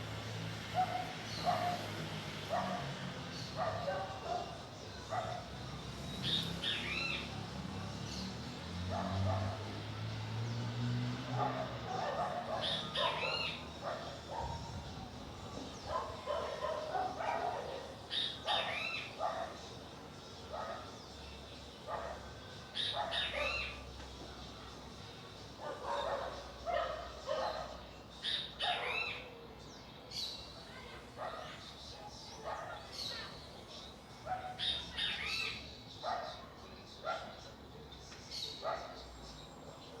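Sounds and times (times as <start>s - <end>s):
birds calling: 0.6s - 40.0s
dog yipping and barking: 0.8s - 1.8s, 3.6s - 5.4s, 11.4s - 14.7s, 15.9s - 19.6s, 22.8s - 23.7s, 25.6s - 29.3s, 31.2s - 31.6s, 36.0s - 36.4s.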